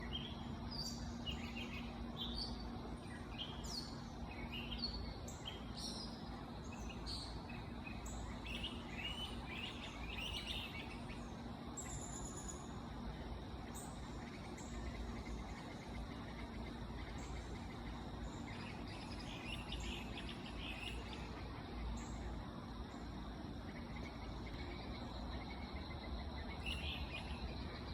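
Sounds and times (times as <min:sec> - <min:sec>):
birds chirping: 0:00.0 - 0:27.9
low background rumble: 0:00.0 - 0:27.9.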